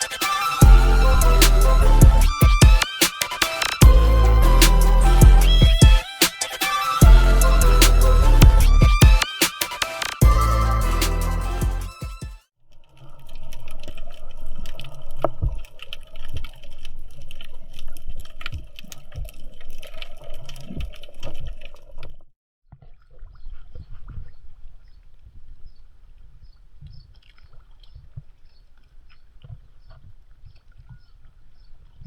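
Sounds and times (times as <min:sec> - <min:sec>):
water splashing and trickling: 0:12.6 - 0:32.0.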